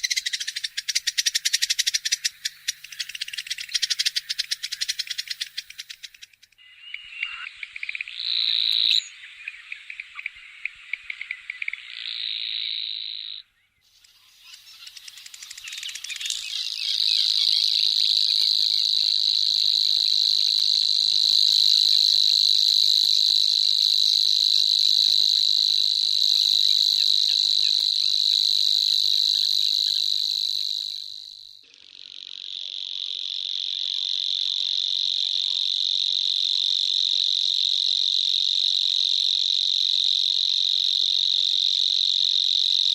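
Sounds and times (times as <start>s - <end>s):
bird reeling trill: 0.0s - 31.6s.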